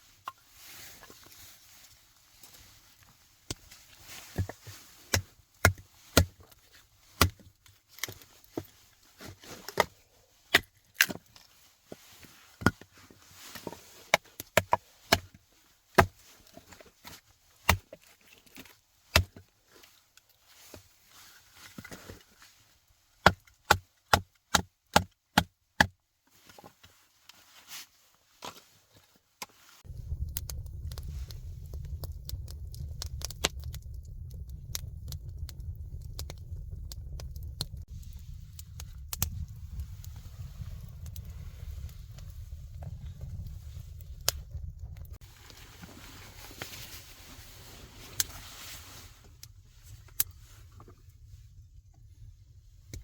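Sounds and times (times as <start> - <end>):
wood being chopped: 23.2 - 25.9
steady low rumble: 29.8 - 48.0.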